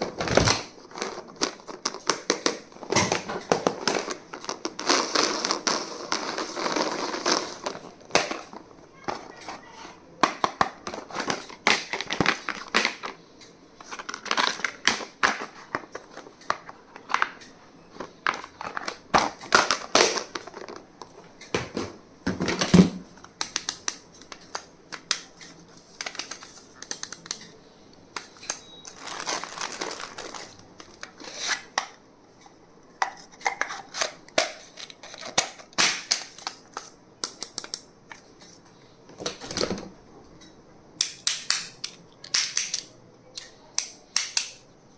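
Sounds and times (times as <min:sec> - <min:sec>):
packaging rustling: 0:28.3 - 0:31.8
clicks and taps of small items: 0:34.3 - 0:38.5.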